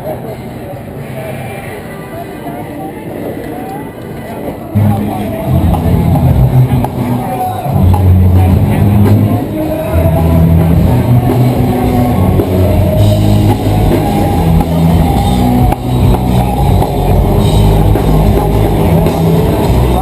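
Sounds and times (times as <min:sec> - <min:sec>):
rock music with drums and guitar: 0:04.8 - 0:20.0.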